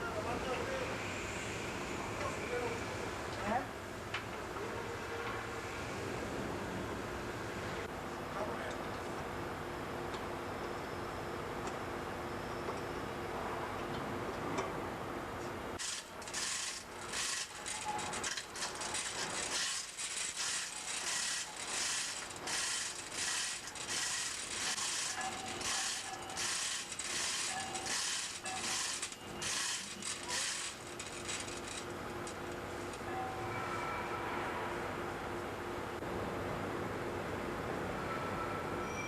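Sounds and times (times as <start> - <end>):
ratcheting mechanism strokes: 15.8 - 32.5.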